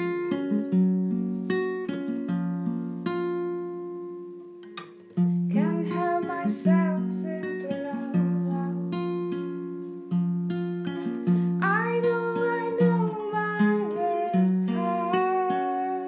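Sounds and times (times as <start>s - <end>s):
acoustic guitar chords: 0.0s - 16.0s
person singing: 5.5s - 9.3s, 11.6s - 16.0s.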